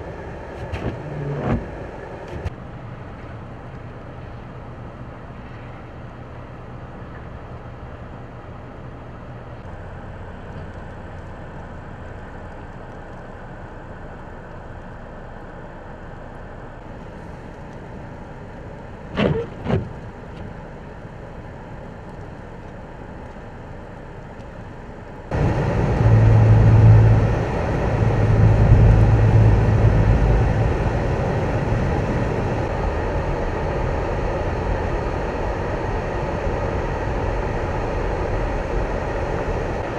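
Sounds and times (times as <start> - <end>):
engine hum: 0.0 - 39.9
road traffic with engine rumble: 0.0 - 39.9.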